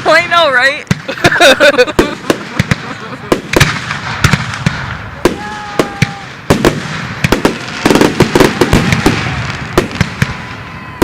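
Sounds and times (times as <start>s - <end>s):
continuous hiss: 0.0s - 8.3s
fireworks bangs and crackles: 0.0s - 11.0s.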